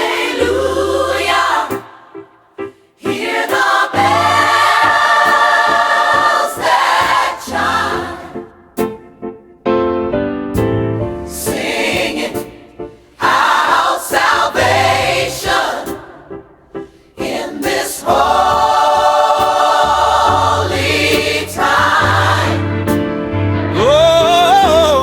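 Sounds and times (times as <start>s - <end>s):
gospel choir singing: 0.0s - 8.8s, 11.2s - 25.0s
instrumental backing with bass line: 4.0s - 12.3s, 18.2s - 25.0s.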